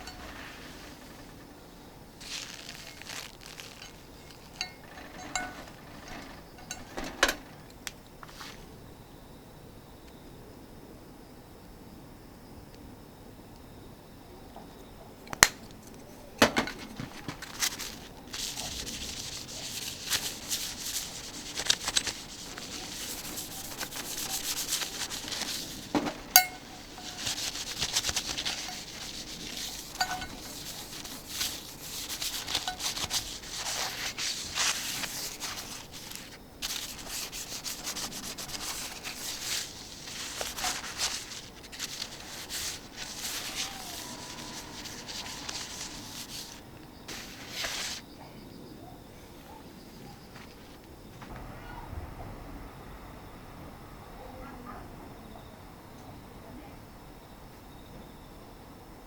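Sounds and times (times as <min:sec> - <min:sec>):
rubbing on a steel griddle: 0:00.0 - 0:01.4, 0:02.2 - 0:07.5, 0:17.4 - 0:48.0
metallic knocks: 0:04.2 - 0:07.7, 0:26.3 - 0:27.6, 0:28.4 - 0:31.1.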